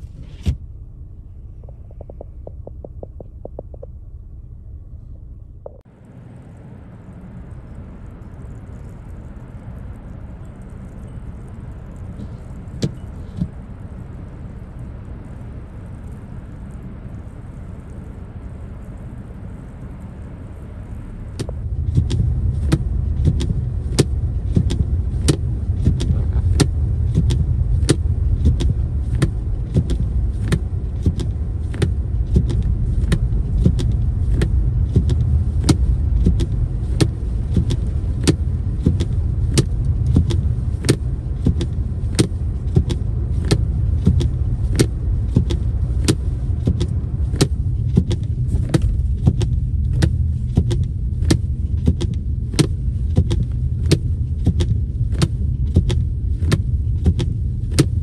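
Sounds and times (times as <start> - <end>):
car engine low rumble: 0.0 - 58.0.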